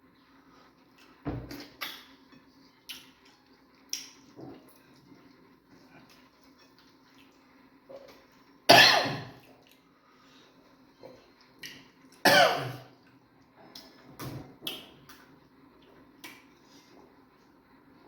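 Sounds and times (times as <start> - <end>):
person coughing: 8.7 - 9.4, 12.3 - 12.8.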